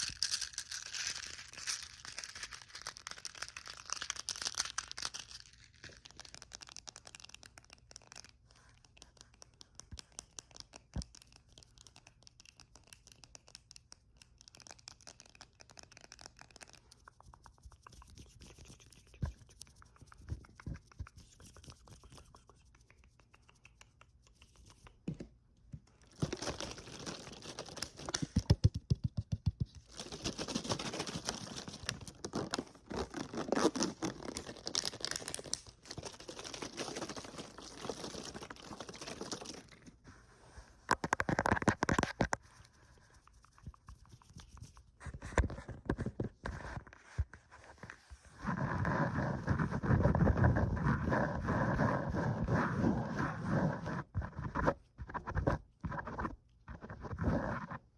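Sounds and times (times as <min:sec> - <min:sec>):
rapid scratching and rubbing: 0:14.5 - 0:25.0, 0:36.0 - 0:57.8.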